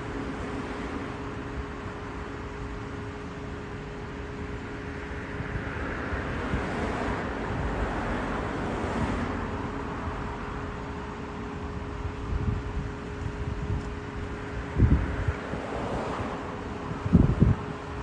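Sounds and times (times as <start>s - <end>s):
steady hum: 0.0s - 18.0s.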